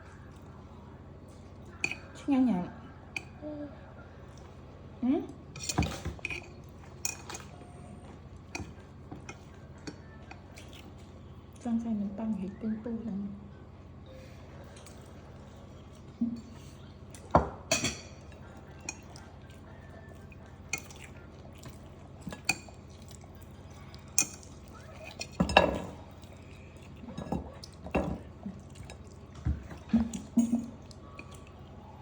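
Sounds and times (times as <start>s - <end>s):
cutlery and dishes clinking: 5.6s - 7.5s, 17.4s - 19.2s, 24.2s - 26.2s.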